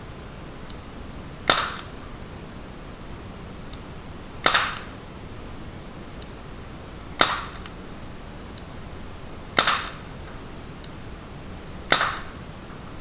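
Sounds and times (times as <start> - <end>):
pellet gun shots cracking: 1.4 - 2.0, 4.4 - 5.0, 7.2 - 7.8, 9.6 - 10.3, 11.8 - 12.4.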